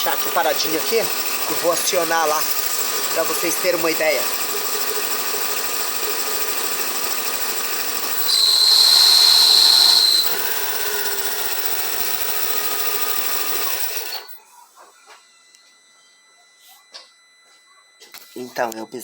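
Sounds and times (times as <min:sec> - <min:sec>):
high-pitched clutch bearing squeal: 0:08.2 - 0:11.2.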